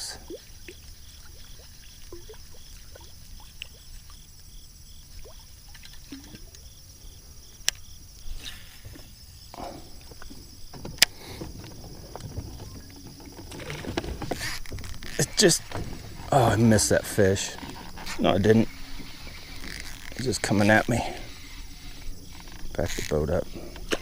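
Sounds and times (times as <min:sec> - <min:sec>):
insects droning: 0:00.0 - 0:24.0
water plops and splashes: 0:00.2 - 0:04.2.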